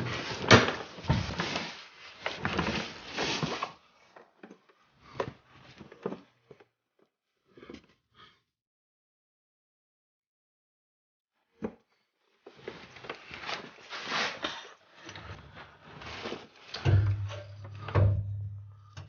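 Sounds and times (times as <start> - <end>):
objects clattering and rustling: 0.0 - 6.7, 11.6 - 19.0
sharp knocks and clicks: 16.8 - 19.0.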